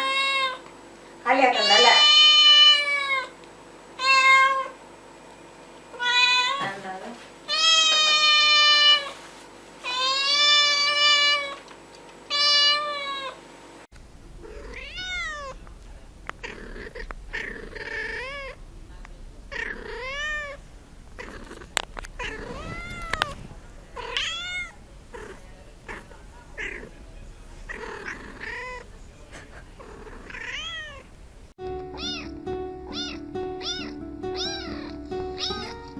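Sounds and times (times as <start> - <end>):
cat meowing: 6.0 - 6.6, 14.4 - 18.6, 19.2 - 28.9, 29.8 - 31.1, 32.0 - 35.9.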